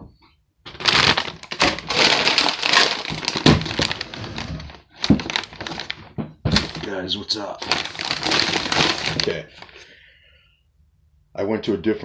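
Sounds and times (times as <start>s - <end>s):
crinkling handling noise: 0.7s - 9.9s.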